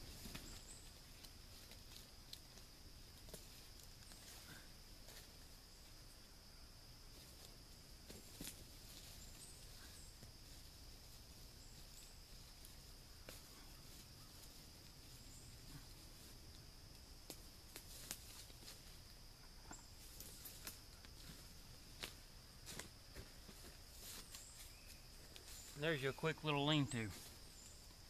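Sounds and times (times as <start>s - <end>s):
insect drone: 0.0s - 28.0s
small clicks and rustles: 15.7s - 24.7s.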